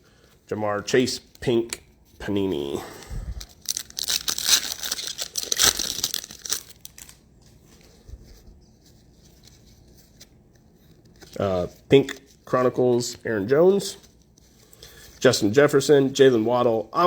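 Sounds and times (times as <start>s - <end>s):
foil wrapper tearing and crinkling: 3.4s - 7.2s.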